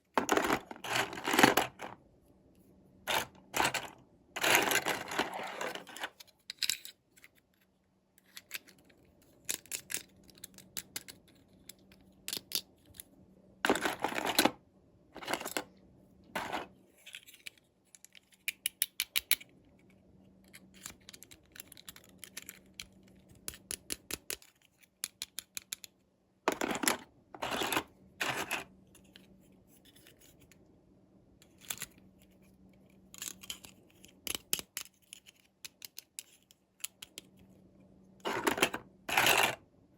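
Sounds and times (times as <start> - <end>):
packaging clicks and scratches: 0.2 - 2.0, 3.1 - 7.5, 13.7 - 14.6, 15.2 - 15.7, 16.3 - 19.5, 20.4 - 25.9, 26.5 - 29.2, 38.2 - 39.6.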